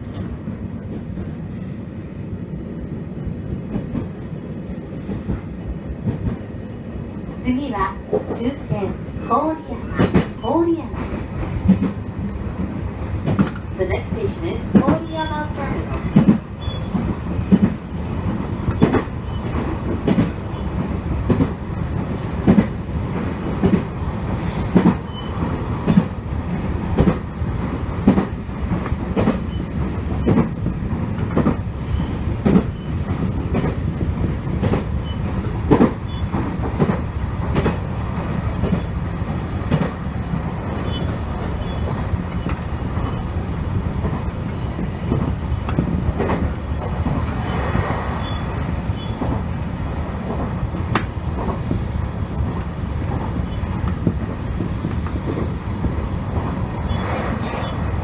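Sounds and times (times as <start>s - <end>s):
low train running rumble: 0.0s - 58.0s
train wheels clicking over rail joints: 14.6s - 58.0s.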